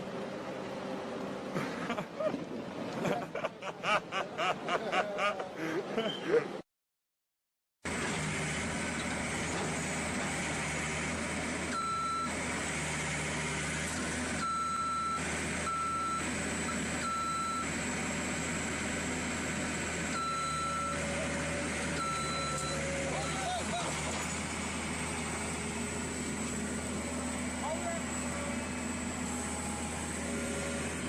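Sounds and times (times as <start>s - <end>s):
loader engine running: 7.9s - 31.0s
reversing alarm beeps: 14.4s - 17.7s, 20.2s - 21.2s, 22.0s - 23.6s.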